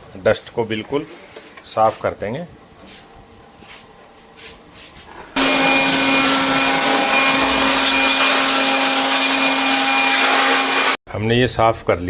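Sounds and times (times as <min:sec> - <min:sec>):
blower motor hum: 0:05.3 - 0:11.0
air blower rushing: 0:05.4 - 0:11.0.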